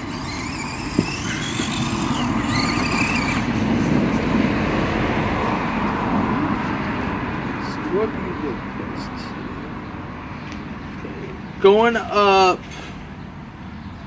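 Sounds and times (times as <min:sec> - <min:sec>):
small electric motor whirring: 0:00.0 - 0:04.4.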